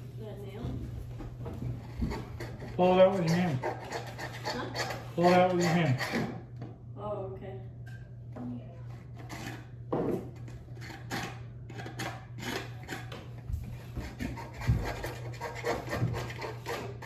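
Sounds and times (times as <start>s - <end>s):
steady low hum: 0.0s - 17.0s
scraping at a wall: 1.0s - 6.4s, 8.9s - 17.0s.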